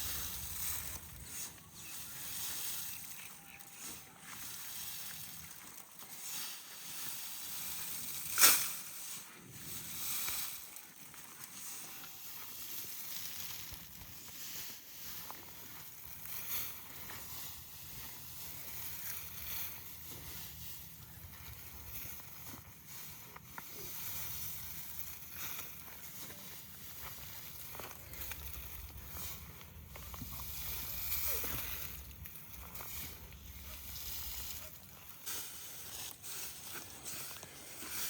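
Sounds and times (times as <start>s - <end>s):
low hissing rustling noise: 0.0s - 3.2s, 12.6s - 38.0s.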